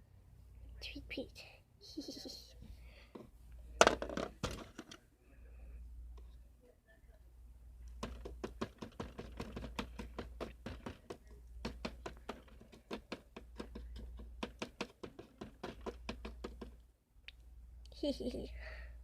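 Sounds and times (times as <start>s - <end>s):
toys tapping on hard surface: 3.2s - 5.0s, 8.0s - 16.8s
steady low hum: 5.0s - 8.4s.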